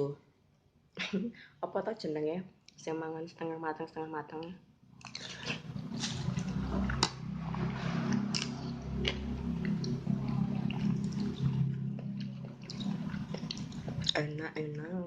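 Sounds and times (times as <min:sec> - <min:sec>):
wet chewing and slurping: 0:05.0 - 0:14.2.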